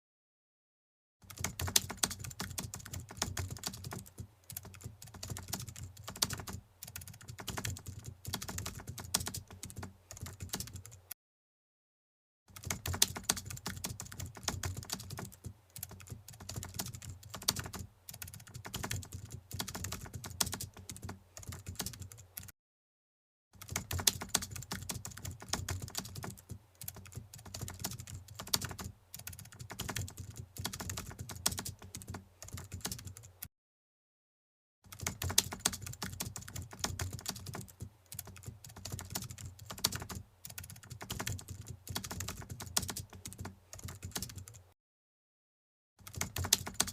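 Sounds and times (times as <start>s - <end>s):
keyboard typing clicks: 1.3s - 11.0s, 12.6s - 22.5s, 23.6s - 33.3s, 46.0s - 46.9s.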